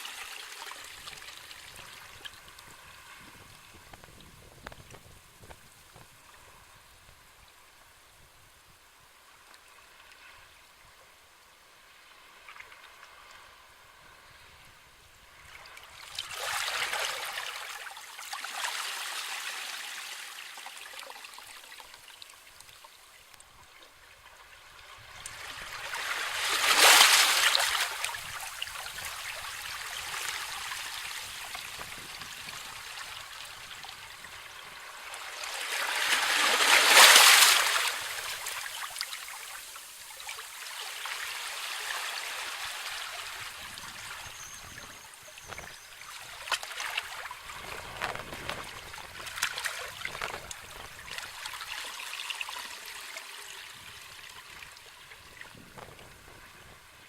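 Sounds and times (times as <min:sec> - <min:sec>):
sea waves breaking on shore: 0:15.3 - 0:22.0, 0:24.2 - 0:55.3.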